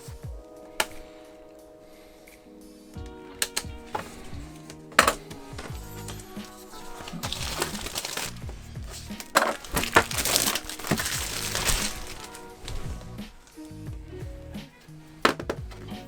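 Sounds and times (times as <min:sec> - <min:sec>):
background music: 0:00.0 - 0:16.0
sharp plastic clicks: 0:03.4 - 0:04.1
plastic case rustling and crinkling: 0:03.4 - 0:13.7, 0:15.1 - 0:16.0.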